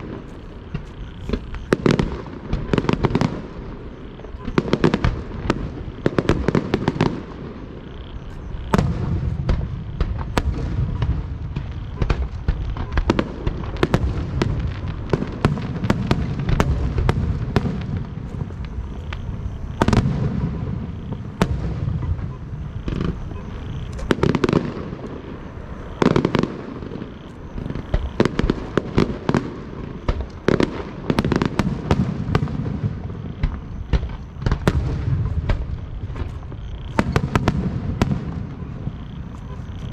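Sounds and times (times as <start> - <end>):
firework shells cracking and booming: 0.0 - 39.9.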